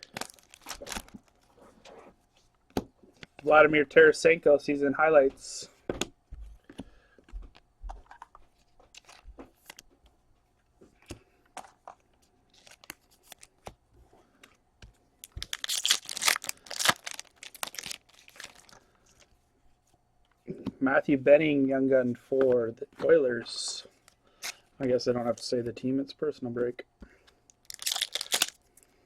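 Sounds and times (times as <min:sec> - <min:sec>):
plastic packaging crinkling: 0:00.0 - 0:01.6, 0:12.5 - 0:13.7, 0:15.2 - 0:19.3, 0:27.5 - 0:28.7.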